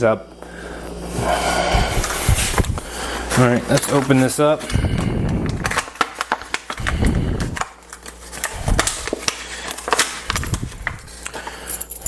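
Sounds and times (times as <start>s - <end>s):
packaging being opened by hand: 1.8s - 11.4s.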